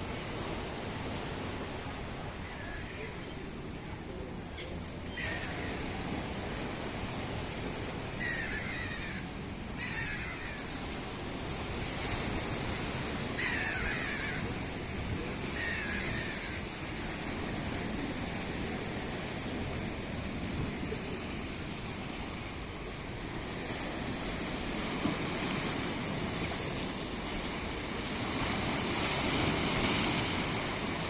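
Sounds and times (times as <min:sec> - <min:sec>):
sea waves: 0:00.0 - 0:31.0
wind: 0:00.0 - 0:31.0
harsh bird calls: 0:08.2 - 0:09.2.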